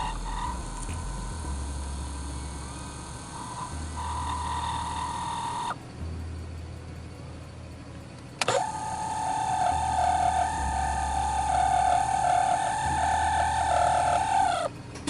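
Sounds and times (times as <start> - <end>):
actuator squealing: 0.0 - 5.8, 8.4 - 14.8.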